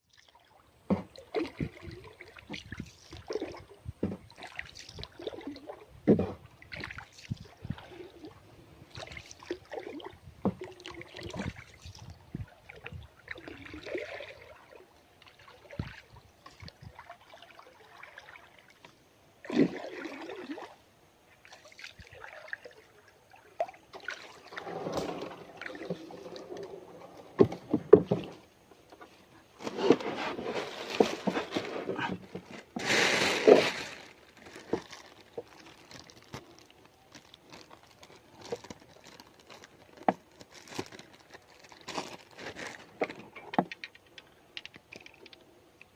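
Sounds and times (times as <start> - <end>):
water sloshing and splashing: 0.0 - 45.9
knocks and handling noises: 24.6 - 35.6.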